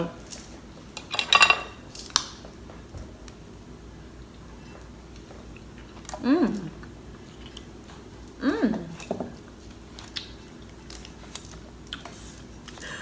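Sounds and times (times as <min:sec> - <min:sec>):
cutlery clinking against dishes: 0:00.3 - 0:01.8.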